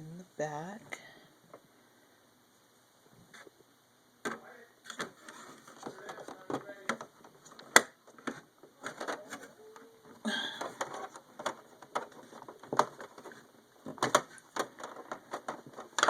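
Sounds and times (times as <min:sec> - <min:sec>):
handling clicks and knocks: 0:10.1 - 0:16.0.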